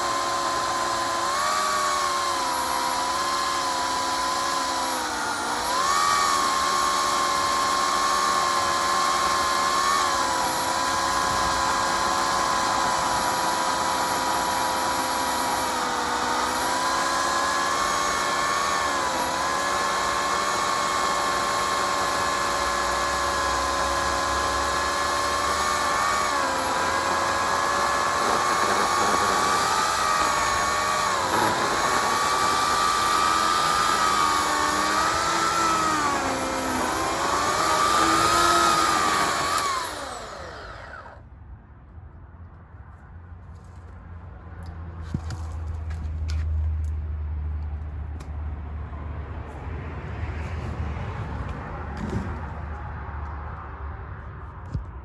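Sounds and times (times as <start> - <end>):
electric chainsaw cutting wood: 0.0 - 41.2.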